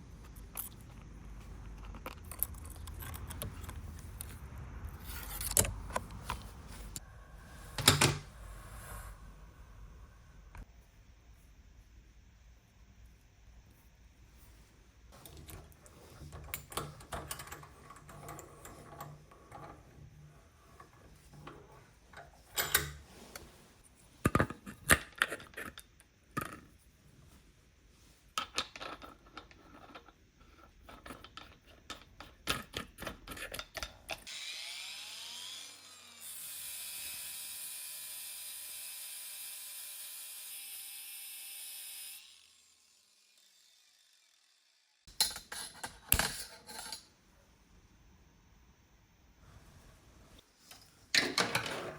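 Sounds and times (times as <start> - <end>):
metal parts clicking and knocking: 0.2 - 4.3, 15.2 - 19.8
small power tool spinning: 34.3 - 45.1.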